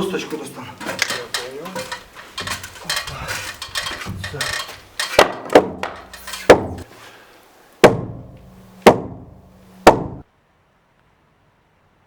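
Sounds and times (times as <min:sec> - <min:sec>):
hammer blows on timber: 0:04.0 - 0:06.9, 0:07.8 - 0:10.2.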